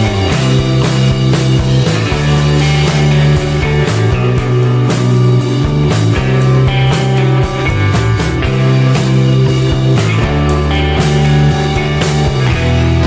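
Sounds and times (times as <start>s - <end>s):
rock music: 0.0s - 13.0s
steady drum beat: 0.0s - 13.0s.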